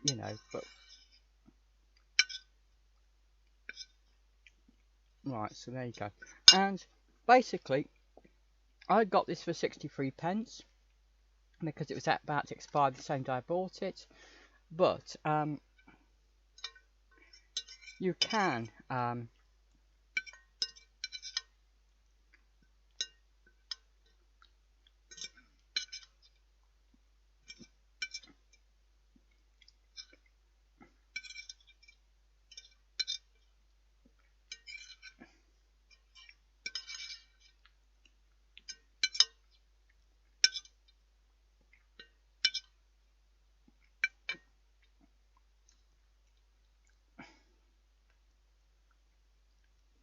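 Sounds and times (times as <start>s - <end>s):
cutlery scraping a plate: 0.1s - 1.2s, 2.2s - 2.5s, 17.6s - 18.0s, 20.2s - 21.5s, 25.1s - 26.2s, 27.5s - 28.4s, 31.1s - 33.4s, 34.5s - 35.3s, 36.0s - 37.6s, 38.6s - 39.5s
cutlery clinking on a plate: 2.2s - 2.5s, 20.2s - 21.5s, 31.1s - 33.4s, 36.0s - 37.6s, 38.6s - 39.5s, 40.4s - 40.8s.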